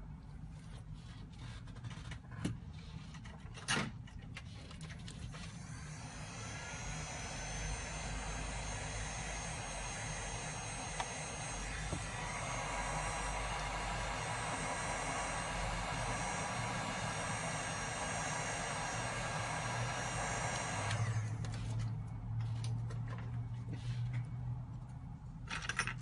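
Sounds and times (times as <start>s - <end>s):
small motor whirring: 5.3s - 21.8s.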